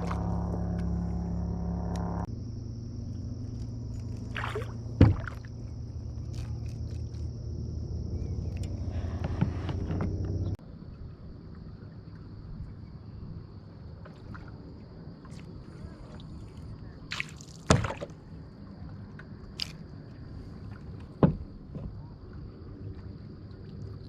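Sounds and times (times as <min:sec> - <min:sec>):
water sloshing: 0:00.0 - 0:01.9, 0:03.2 - 0:07.3
high insect drone: 0:00.0 - 0:10.6
knocks against a kayak: 0:05.0 - 0:05.4, 0:21.2 - 0:22.0.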